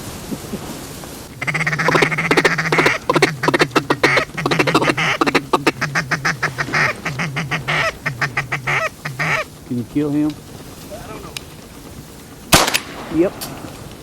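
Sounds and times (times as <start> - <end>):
duck call quacking: 1.4 - 9.5.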